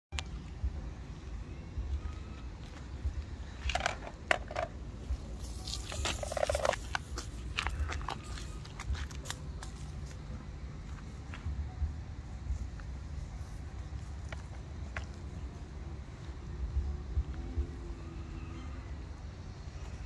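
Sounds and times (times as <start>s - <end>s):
low steady rumble: 0.1s - 20.0s.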